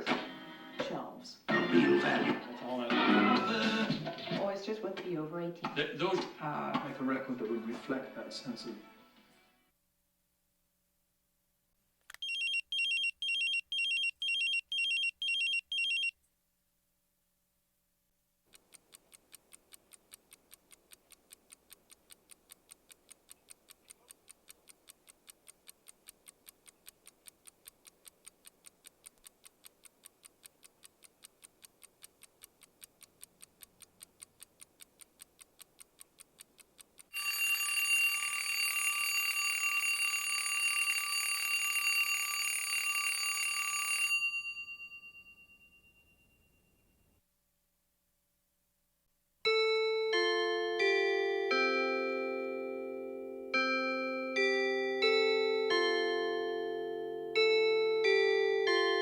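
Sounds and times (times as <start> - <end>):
alarm clock ticking: 12.2 - 16.1, 18.6 - 44.7, 53.6 - 59.0
alarm bell ringing: 37.2 - 46.9, 53.6 - 59.0.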